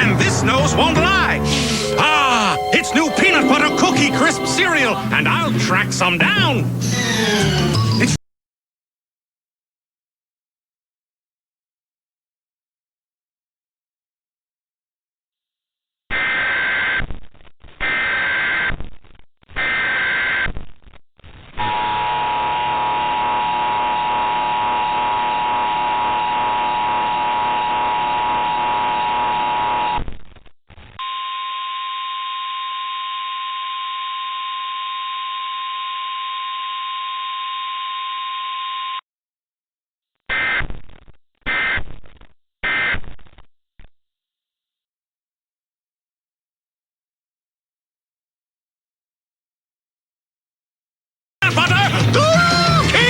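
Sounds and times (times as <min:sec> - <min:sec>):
two-tone attention signal: 0:01.7 - 0:05.5
single-pitch alert tone: 0:01.8 - 0:05.4.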